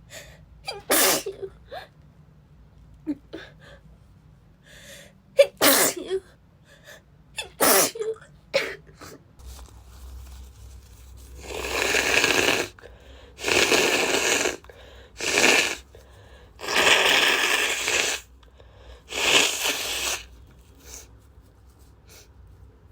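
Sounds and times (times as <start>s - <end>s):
woman blowing her nose: 0.7s - 1.4s, 5.6s - 6.0s, 7.4s - 8.0s, 11.4s - 12.8s, 13.4s - 16.0s, 16.6s - 18.3s, 19.0s - 21.1s
short breaths: 11.4s - 21.1s.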